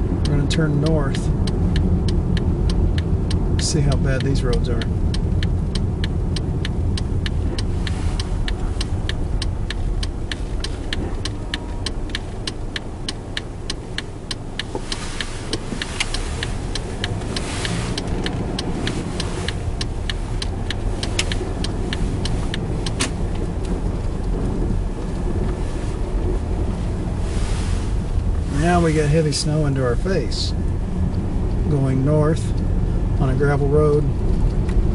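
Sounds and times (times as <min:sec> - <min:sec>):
fast even ticking: 0:00.0 - 0:24.6
engine and road rumble: 0:00.0 - 0:34.9.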